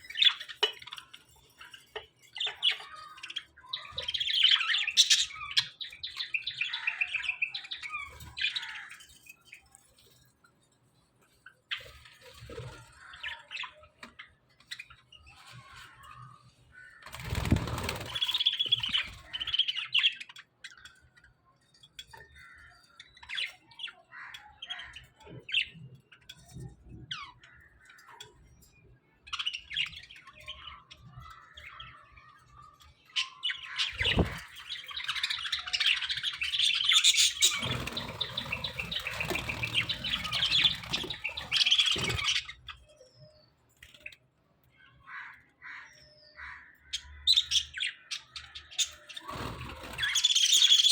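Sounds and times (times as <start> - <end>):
budgerigars chirping and chattering: 0.0 - 9.8, 11.5 - 21.2, 22.1 - 28.2, 29.2 - 44.2, 45.0 - 50.9
wing flapping: 17.1 - 18.4, 33.9 - 34.4, 37.4 - 42.3.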